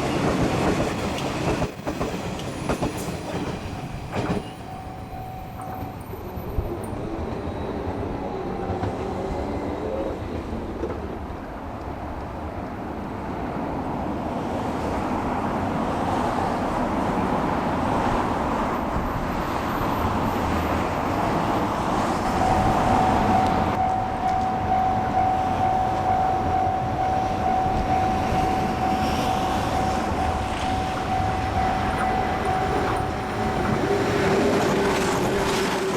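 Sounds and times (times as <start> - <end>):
train rumble and wheel noise: 0.0 - 35.9
steady high tone: 22.2 - 34.4.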